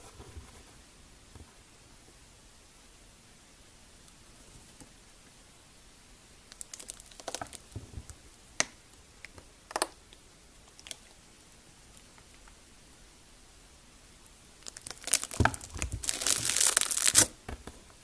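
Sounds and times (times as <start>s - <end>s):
slime crackling and popping: 6.5s - 11.1s, 14.6s - 17.4s
loud slime pop: 14.8s - 17.3s.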